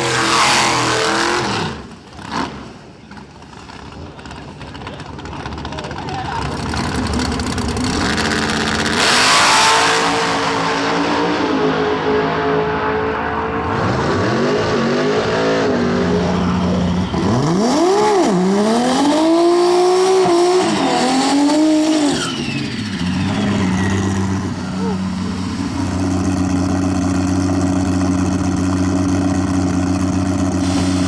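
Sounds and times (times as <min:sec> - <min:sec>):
race car engine at full throttle: 0:00.0 - 0:31.0.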